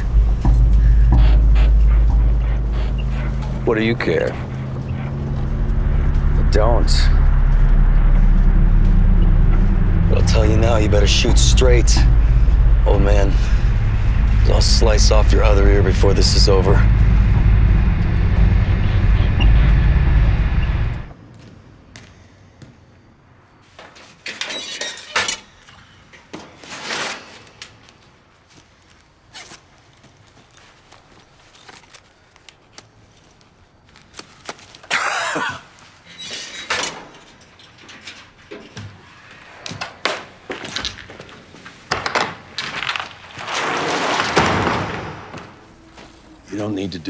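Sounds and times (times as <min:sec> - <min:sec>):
car rumbling on the move: 0:00.0 - 0:21.1.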